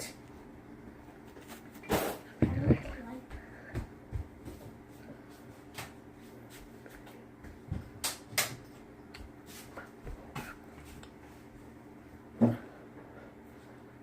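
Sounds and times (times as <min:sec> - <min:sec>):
faint steady hum: 0:00.0 - 0:14.0.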